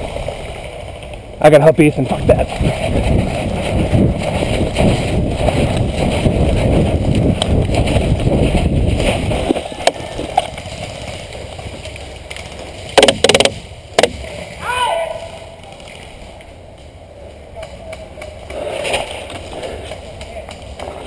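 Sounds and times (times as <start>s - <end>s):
wind buffeting microphone: 0.0s - 12.8s
footfalls of person running: 2.7s - 12.9s.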